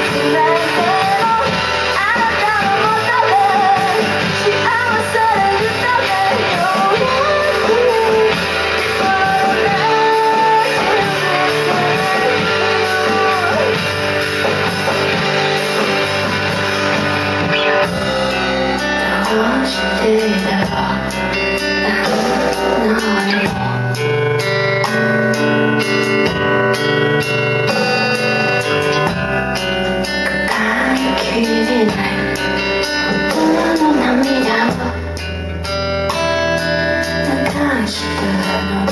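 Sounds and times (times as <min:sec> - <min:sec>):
person singing: 0:00.0 - 0:15.4, 0:17.6 - 0:25.5, 0:30.0 - 0:35.4, 0:37.1 - 0:38.9
electric guitar: 0:00.0 - 0:38.9
rock band playing: 0:00.0 - 0:38.9.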